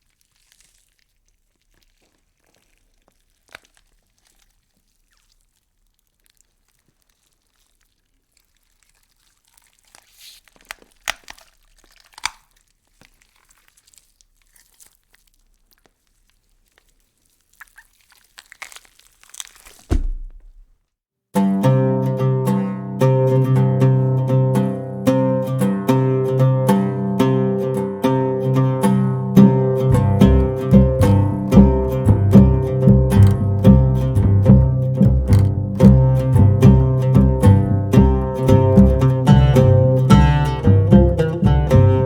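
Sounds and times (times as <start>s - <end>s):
deep thump: 19.8s - 20.7s.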